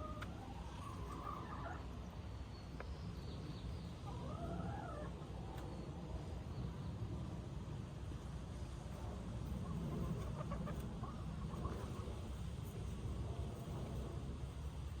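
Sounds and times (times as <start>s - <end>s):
hens clucking: 0.1s - 1.9s, 9.6s - 12.2s.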